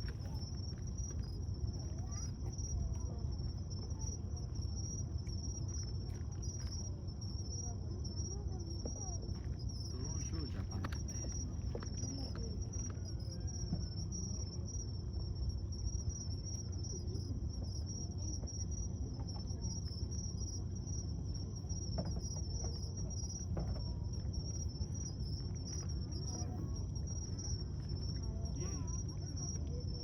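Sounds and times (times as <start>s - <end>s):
insects trilling: 0.0s - 30.0s
low background rumble: 0.0s - 30.0s.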